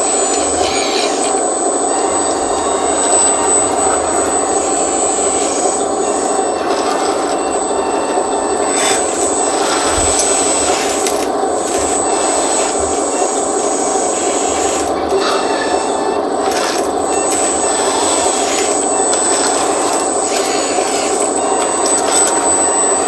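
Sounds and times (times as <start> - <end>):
electric motors whirring: 0.0 - 23.0
hydraulic pump whine: 0.0 - 23.0.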